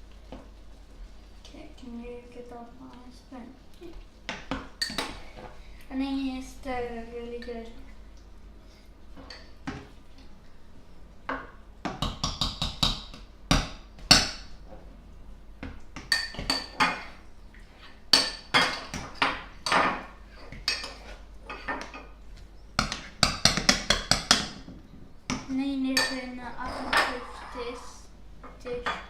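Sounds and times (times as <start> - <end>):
spoon scraping and clinking pot: 26.0 - 28.1.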